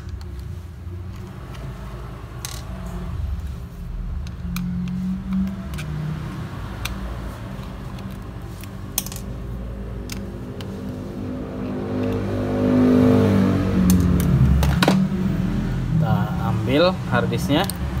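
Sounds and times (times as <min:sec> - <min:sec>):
small metal clicks and taps: 0:04.1 - 0:09.3.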